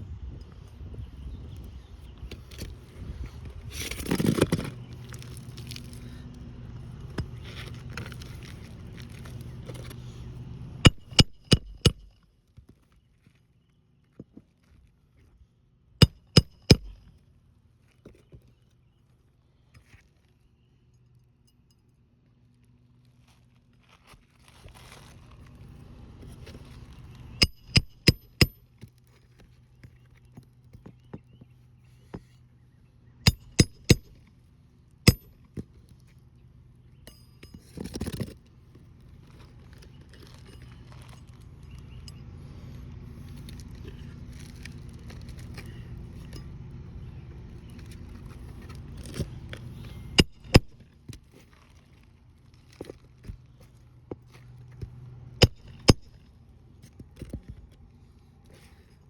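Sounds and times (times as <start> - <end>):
steady low hum: 0.0 - 12.4, 15.8 - 17.5, 29.7 - 59.0
hammer striking roofing nails: 10.9 - 12.1, 16.0 - 17.0, 27.4 - 28.6, 33.3 - 34.2, 35.1 - 35.4, 50.2 - 50.8, 55.4 - 56.1.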